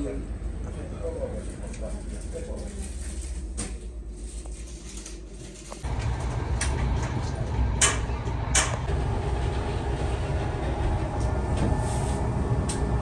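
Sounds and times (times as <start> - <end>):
train carriage rumble: 5.8 - 13.0.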